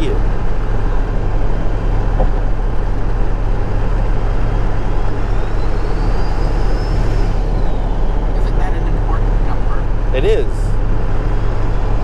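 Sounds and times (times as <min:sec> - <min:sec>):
diesel engine drone: 0:00.0 - 0:12.0
road noise: 0:00.0 - 0:12.0
turbo whistle: 0:04.4 - 0:09.4.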